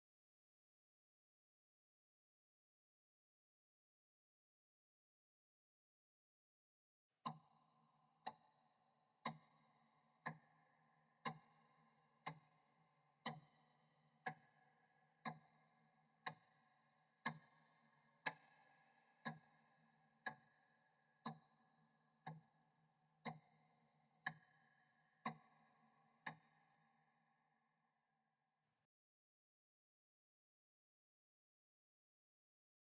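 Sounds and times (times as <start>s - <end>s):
mechanical clock ticking with echo: 7.2s - 27.0s.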